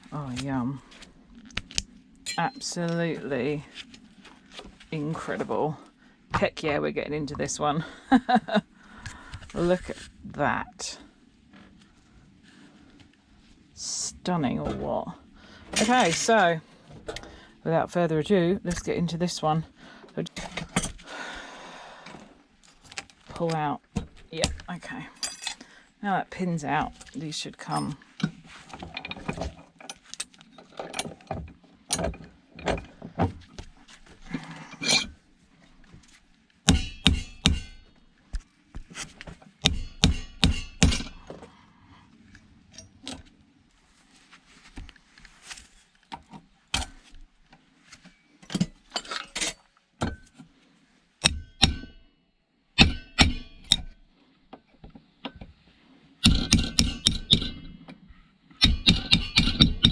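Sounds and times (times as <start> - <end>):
metal parts clinking and knocking: 39.8 - 41.2, 56.2 - 57.8, 58.6 - 59.9.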